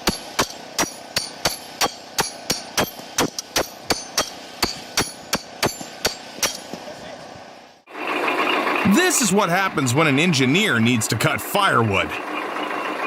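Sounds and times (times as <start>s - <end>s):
hammer blows ringing: 0.0s - 7.1s.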